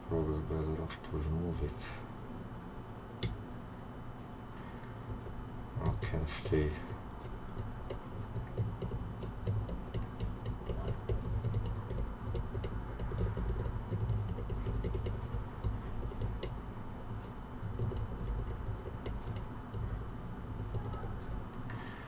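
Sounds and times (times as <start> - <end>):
low machine hum: 0.0 - 22.0
small tools clicking on circuit board: 6.1 - 21.8.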